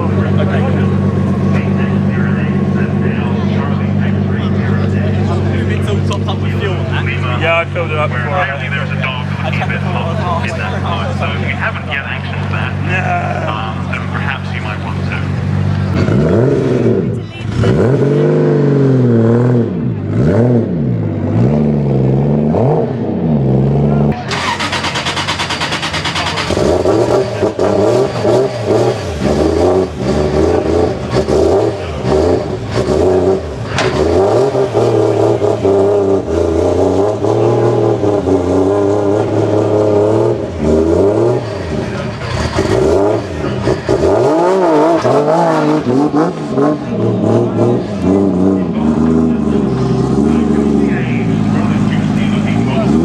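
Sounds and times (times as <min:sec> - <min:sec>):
car engine revving hard: 0:00.0 - 0:53.0.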